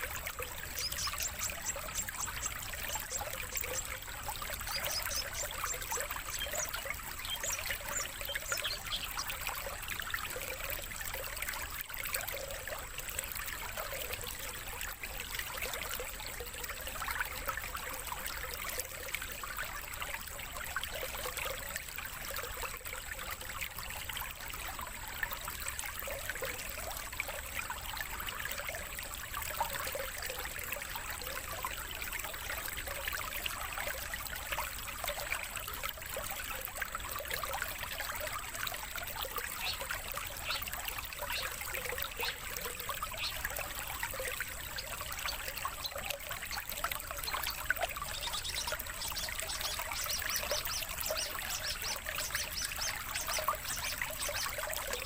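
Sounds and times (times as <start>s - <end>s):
stream water trickling: 0.0s - 55.0s.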